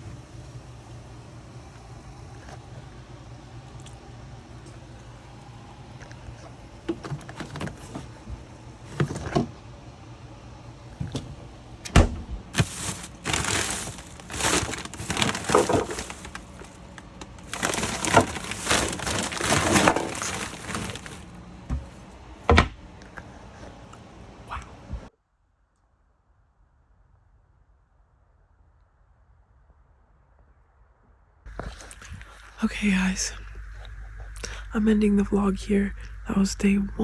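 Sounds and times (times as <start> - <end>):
rustling handling noise: 4.6 - 9.6, 12.3 - 22.3.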